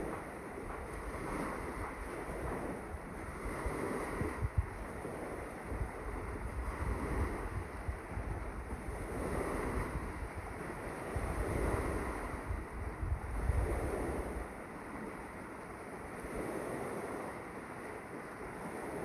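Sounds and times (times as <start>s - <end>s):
wind buffeting microphone: 0.0s - 15.2s
sea waves washing: 0.0s - 19.0s.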